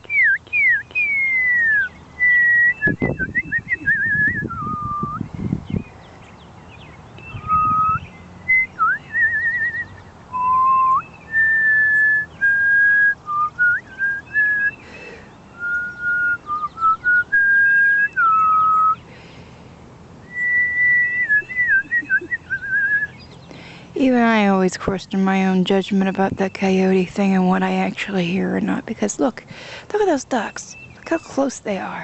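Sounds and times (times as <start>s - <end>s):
person whistling: 0.0s - 5.2s, 7.4s - 14.8s, 20.3s - 23.1s.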